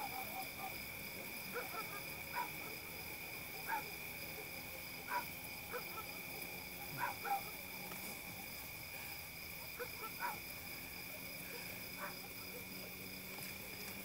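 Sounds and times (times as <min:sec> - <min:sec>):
frogs calling: 0:00.0 - 0:07.9.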